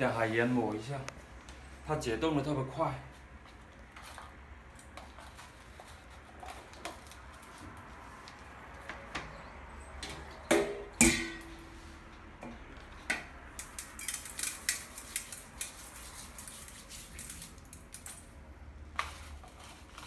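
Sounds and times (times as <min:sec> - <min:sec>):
dishes clattering: 0:10.6 - 0:11.5
utensils clicking and scraping: 0:11.5 - 0:18.4.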